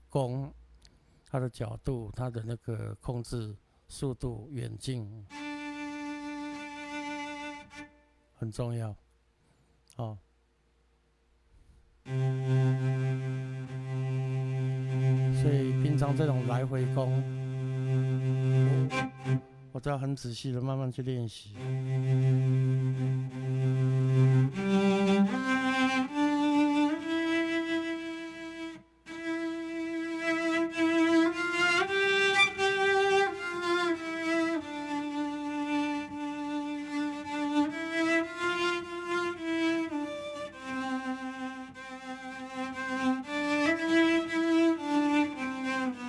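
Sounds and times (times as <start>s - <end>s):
bowed string melody: 5.3s - 8.1s, 12.1s - 19.8s, 21.6s - 46.0s.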